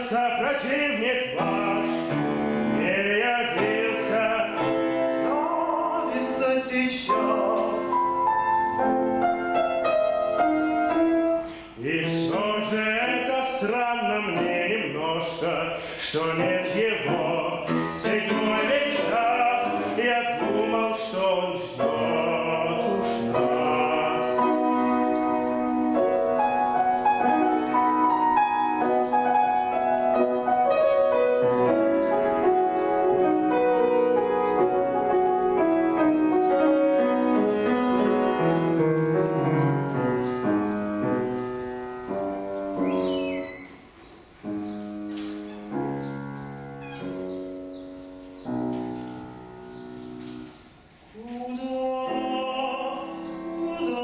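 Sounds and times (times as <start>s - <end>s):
man singing classical song: 0.0s - 54.0s
piano accompaniment: 0.0s - 54.0s.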